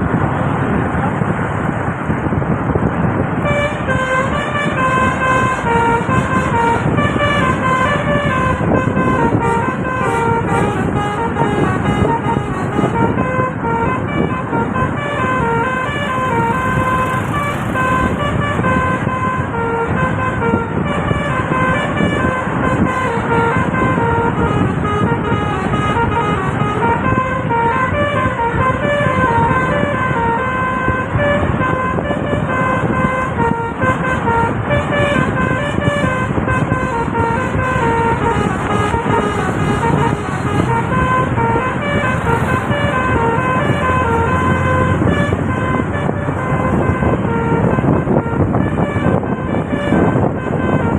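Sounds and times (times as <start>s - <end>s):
multi-tone bus horn tune: 2.6s - 50.9s.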